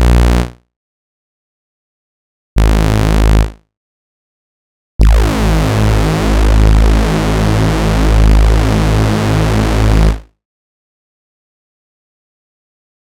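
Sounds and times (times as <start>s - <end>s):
sustained bass synthesizer tone: 0.0s - 0.6s, 5.0s - 10.2s.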